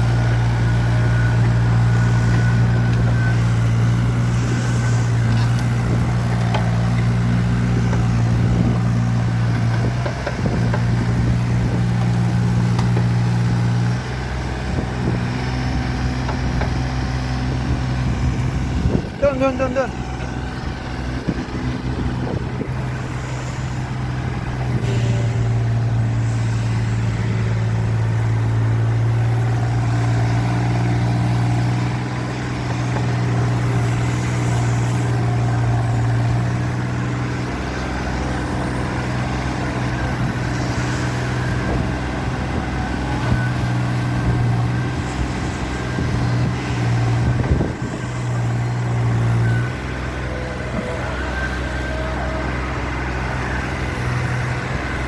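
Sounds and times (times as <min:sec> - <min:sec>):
excavator diesel engine humming: 0:00.0 - 0:55.0.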